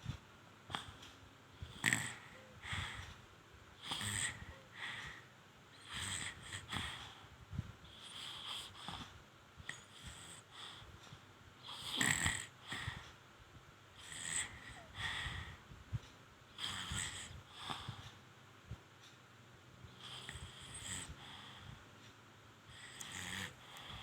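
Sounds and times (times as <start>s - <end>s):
baby snoring: 1.6s - 3.0s, 3.8s - 5.2s, 5.8s - 7.0s, 11.7s - 13.0s, 14.0s - 15.5s, 16.6s - 17.9s, 20.0s - 21.6s, 22.8s - 24.0s.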